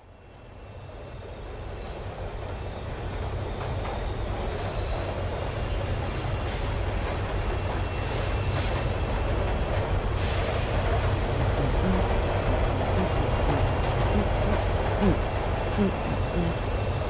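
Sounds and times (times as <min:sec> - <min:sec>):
train rumbling on rails: 0:00.0 - 0:17.0
high wheel squeal: 0:05.6 - 0:10.6.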